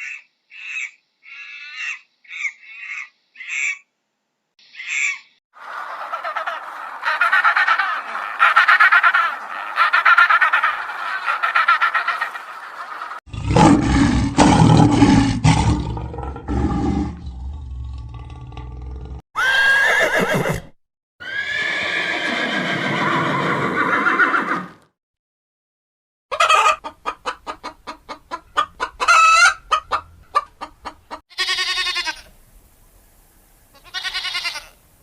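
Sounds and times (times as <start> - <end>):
deep animal call: 13.3 - 20.6.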